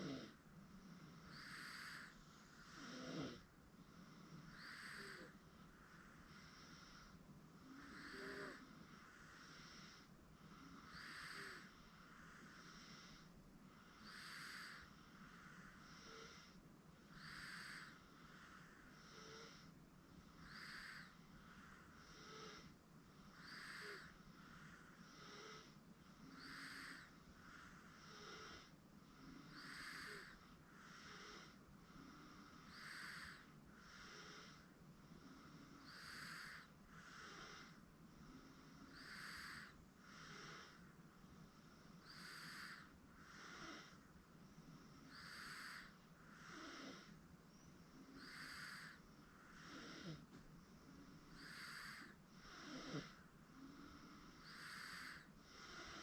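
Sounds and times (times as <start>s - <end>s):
baby snoring softly: 0.0s - 56.0s.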